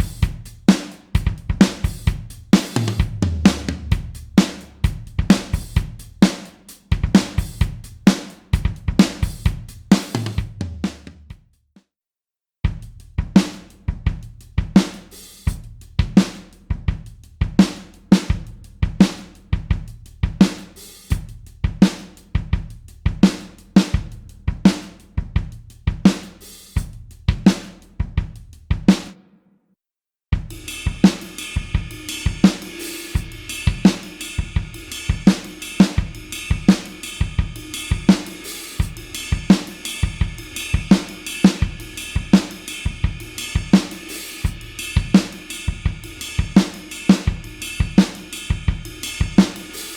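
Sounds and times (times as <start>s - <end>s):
rock drum beat: 0.0s - 11.4s, 12.7s - 29.2s, 30.4s - 49.9s
cymbal wash: 30.5s - 49.9s.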